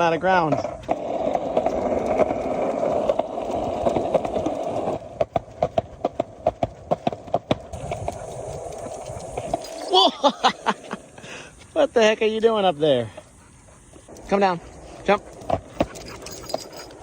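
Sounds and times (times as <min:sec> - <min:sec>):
footsteps on a hard surface: 0:13.1 - 0:17.0.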